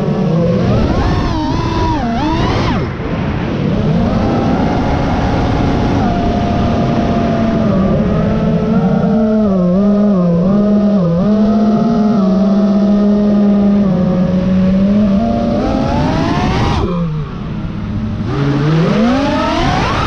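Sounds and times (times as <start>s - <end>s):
quadcopter motors whining: 0.0s - 3.1s, 18.2s - 20.0s.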